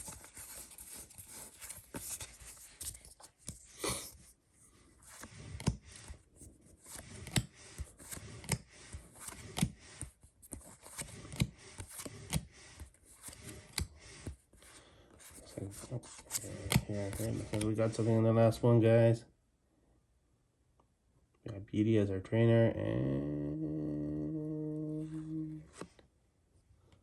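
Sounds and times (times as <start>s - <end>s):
cards sliding and snapping: 0.0s - 4.3s, 4.9s - 18.2s.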